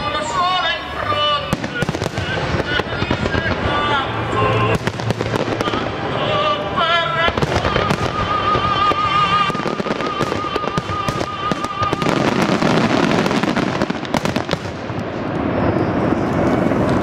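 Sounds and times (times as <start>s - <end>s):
fireworks bursting and crackling: 0.0s - 17.0s
sharp firework bangs: 1.5s - 4.0s, 4.8s - 6.0s, 7.2s - 15.6s
music with long high note: 4.0s - 13.8s.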